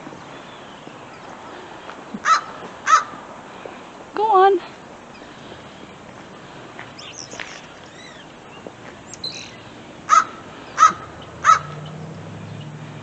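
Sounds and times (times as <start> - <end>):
crows cawing: 2.2 - 3.2, 10.1 - 11.9
faint higher bird calls: 6.9 - 13.0.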